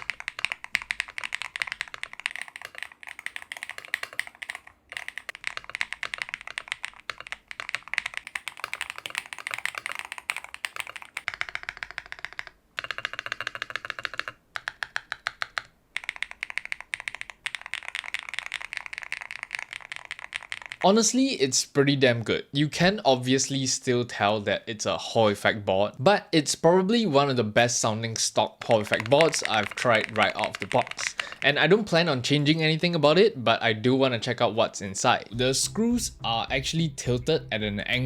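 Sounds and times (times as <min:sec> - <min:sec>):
fast keyboard typing: 0:00.0 - 0:21.1, 0:28.6 - 0:32.6.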